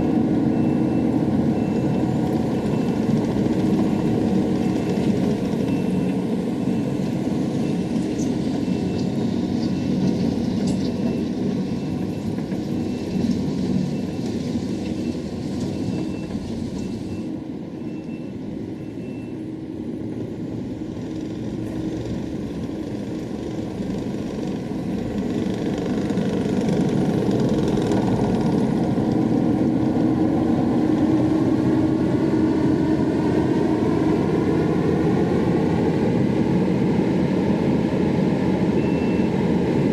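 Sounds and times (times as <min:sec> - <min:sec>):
heavy machine engine: 0:00.0 - 0:39.9
faint high beep: 0:15.0 - 0:19.4, 0:38.8 - 0:39.3.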